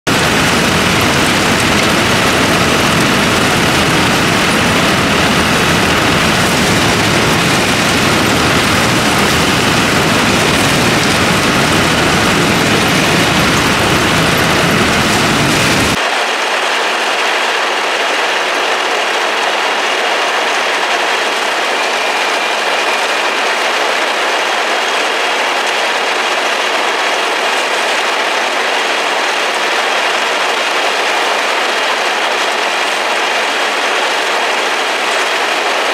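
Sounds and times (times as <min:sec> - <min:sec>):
deep engine rumble: 0:00.1 - 0:16.0
combine harvester clatter: 0:00.1 - 0:35.9.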